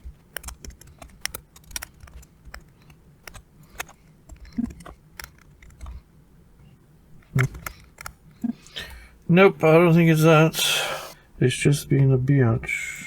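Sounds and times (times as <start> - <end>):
light clicks and taps on laptop: 0.3 - 6.0.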